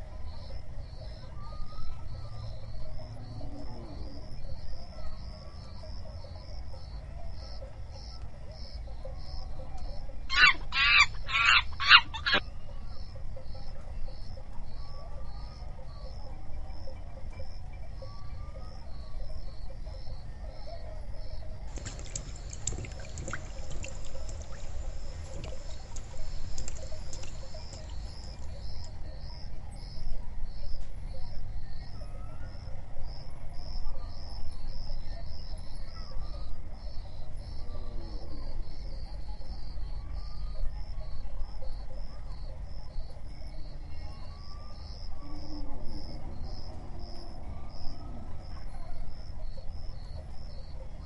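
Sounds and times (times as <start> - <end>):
crickets chirping: 0.0 - 51.0
water splashing and trickling: 21.7 - 29.0.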